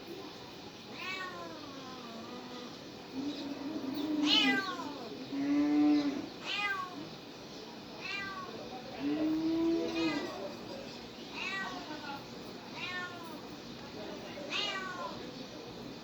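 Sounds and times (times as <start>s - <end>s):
cats meowing: 0.9s - 2.4s, 3.8s - 5.2s, 6.0s - 7.1s, 8.0s - 8.7s, 9.7s - 10.5s, 11.3s - 12.0s, 12.7s - 13.4s, 14.5s - 15.2s
kittens mewing: 4.2s - 5.1s, 6.1s - 7.1s, 11.4s - 11.9s.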